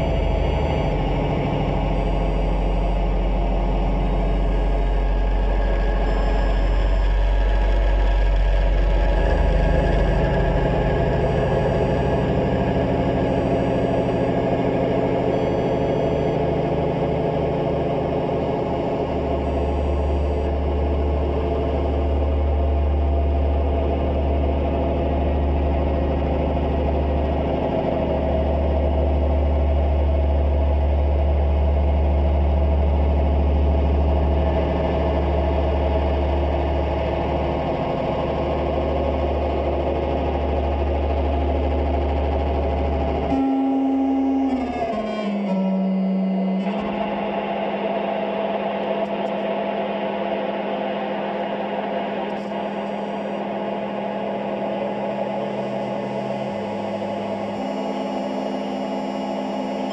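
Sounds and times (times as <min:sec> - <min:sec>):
deep bass note: 0:00.0 - 0:23.8
loud low drone: 0:00.0 - 0:59.9
rapidly pulsing rumble: 0:00.0 - 0:59.9.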